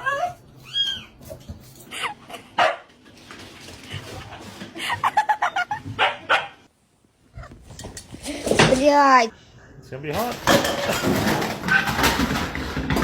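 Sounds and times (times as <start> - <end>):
dog barking: 2.6 - 2.9, 6.0 - 6.7.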